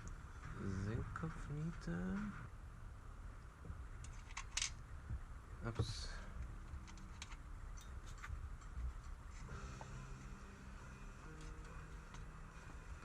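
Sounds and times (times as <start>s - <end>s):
small metal parts clicking: 4.0s - 4.8s, 6.6s - 8.7s.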